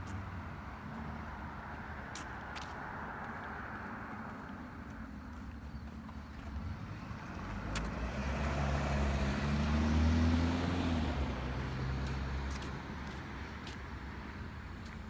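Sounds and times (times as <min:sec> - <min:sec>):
vehicle driving past: 0:06.6 - 0:12.6.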